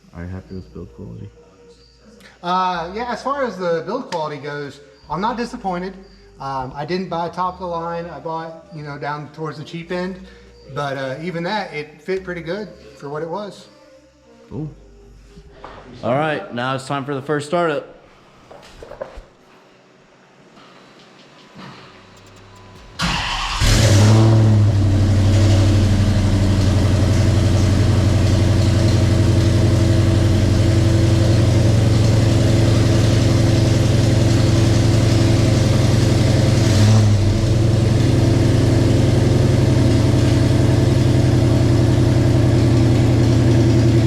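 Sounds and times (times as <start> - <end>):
car engine starting and idling: 21.9 - 44.0
engine throttle blip: 22.0 - 29.6.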